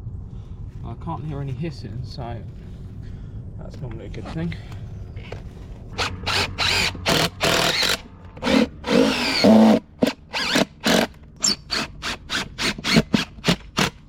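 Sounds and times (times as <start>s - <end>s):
cordless drill whirring in bursts: 6.0s - 14.0s.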